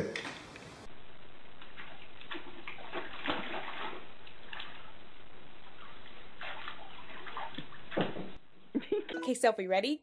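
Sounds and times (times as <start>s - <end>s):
water running and splashing: 1.5s - 8.4s.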